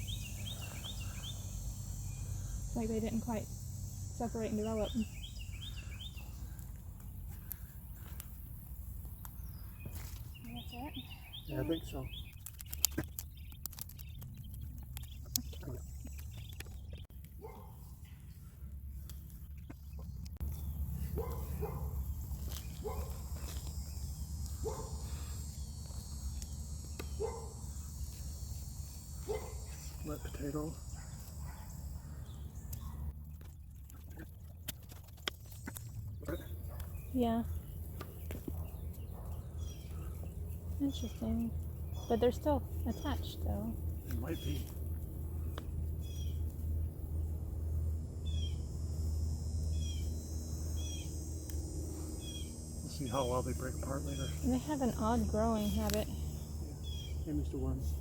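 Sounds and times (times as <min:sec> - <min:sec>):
faint insect buzz: 0:00.0 - 0:06.6, 0:20.6 - 0:32.6, 0:45.5 - 0:58.0
crickets chirping: 0:00.0 - 0:19.3, 0:20.4 - 0:33.5, 0:35.4 - 0:58.0
steady low rumble: 0:00.0 - 0:58.0
distant dog barking: 0:17.4 - 0:18.0, 0:21.0 - 0:22.1, 0:22.8 - 0:23.4, 0:24.5 - 0:25.3, 0:27.0 - 0:28.1, 0:29.2 - 0:30.0, 0:30.8 - 0:33.2, 0:38.5 - 0:40.2.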